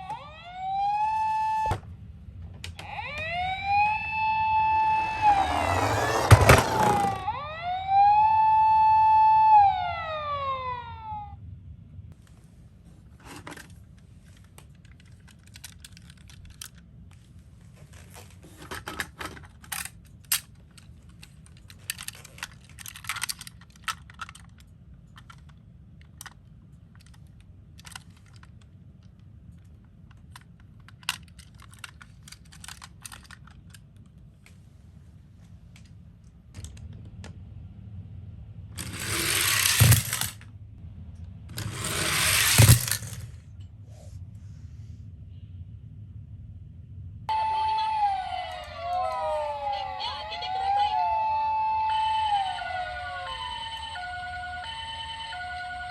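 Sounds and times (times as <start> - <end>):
toy ambulance electronic siren: 0.0 - 1.8, 2.7 - 11.4, 38.8 - 40.3, 41.6 - 43.1, 47.3 - 55.9
plastic clatter: 13.1 - 16.8, 17.8 - 34.1, 38.8 - 40.4, 41.6 - 43.4.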